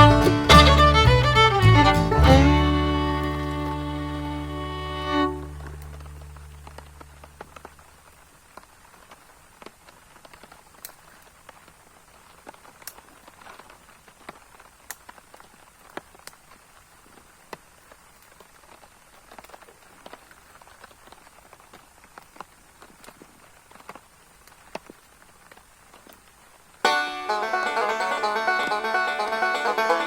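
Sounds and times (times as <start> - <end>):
rain hiss: 2.8 - 26.9
raindrops ticking on leaves: 5.7 - 26.9.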